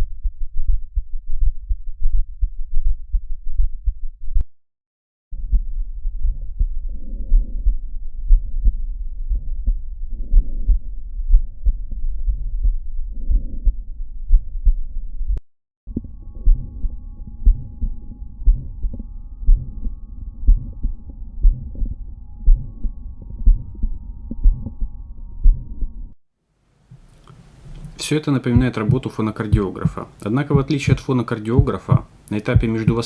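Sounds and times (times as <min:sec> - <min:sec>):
heartbeat thuds through stethoscope: 0:05.4 - 0:16.8, 0:17.4 - 0:17.8, 0:18.4 - 0:19.8, 0:20.5 - 0:23.8, 0:24.4 - 0:24.8, 0:26.9 - 0:33.0
faint steady tones: 0:15.9 - 0:33.0.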